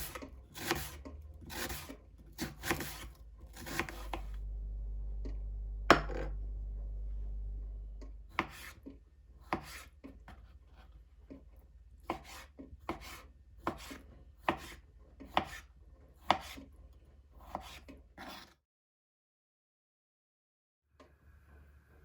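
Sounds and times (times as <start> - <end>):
knife chopping on cutting board: 0.0 - 4.3, 8.3 - 8.8, 9.4 - 10.4, 12.0 - 16.7, 17.4 - 18.5.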